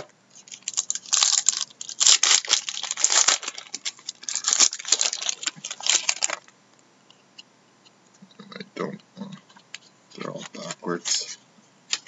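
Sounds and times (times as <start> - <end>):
packaging tearing and crinkling: 0.0 - 6.5.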